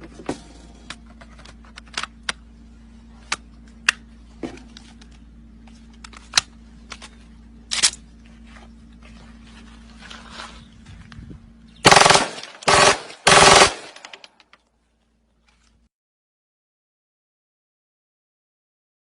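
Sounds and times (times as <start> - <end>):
steady low hum: 0.0 - 15.9
sharp mechanical clicks: 11.8 - 14.6.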